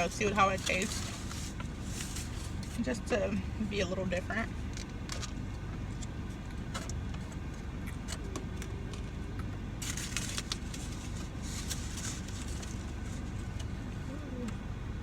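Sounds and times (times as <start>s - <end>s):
crinkly packaging rustling: 0.0s - 2.8s, 9.8s - 13.6s
steady low rumble: 0.0s - 15.0s.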